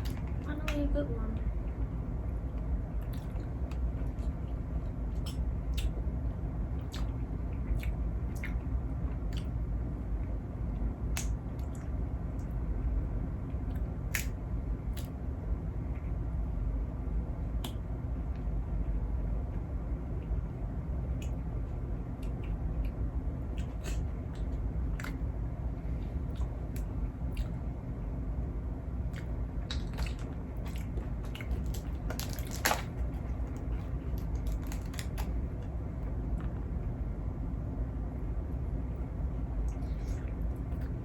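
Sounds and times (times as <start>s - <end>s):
low background hum: 0.0s - 41.0s
chewing mouth smacks: 3.0s - 4.4s, 5.1s - 6.0s, 6.8s - 9.6s, 22.2s - 25.2s, 26.3s - 27.6s, 29.1s - 35.4s, 39.6s - 41.0s.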